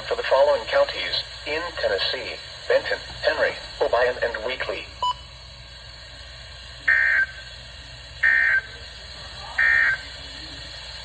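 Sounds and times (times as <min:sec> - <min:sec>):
harsh radio data bursts: 0:00.0 - 0:05.1, 0:06.9 - 0:07.4, 0:08.2 - 0:08.8, 0:09.5 - 0:10.2.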